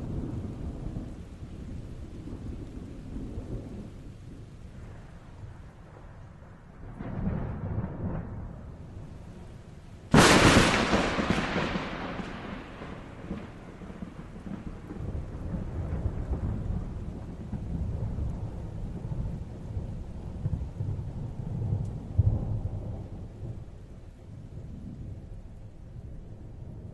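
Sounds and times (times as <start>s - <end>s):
thunder rumbling: 0.0s - 26.9s
sharp lightning crack: 10.1s - 15.2s.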